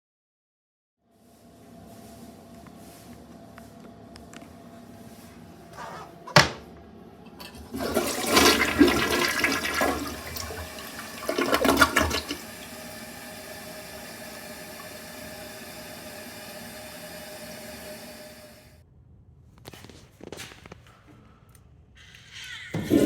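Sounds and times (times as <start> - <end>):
toilet flush click: 7.3 - 18.6, 22.7 - 23.0
toilet flushing water rush: 7.4 - 18.8, 22.6 - 23.0.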